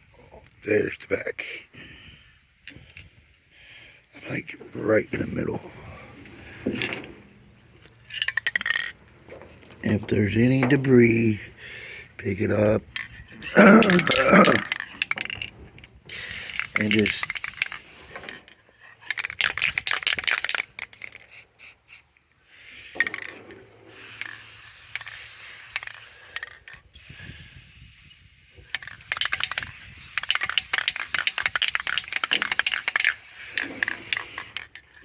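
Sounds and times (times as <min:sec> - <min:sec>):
spray can mixing ball rattling: 0:08.1 - 0:11.6, 0:12.4 - 0:22.1, 0:23.0 - 0:35.0
spray paint can hissing: 0:16.1 - 0:18.5, 0:19.1 - 0:22.1, 0:23.9 - 0:34.8.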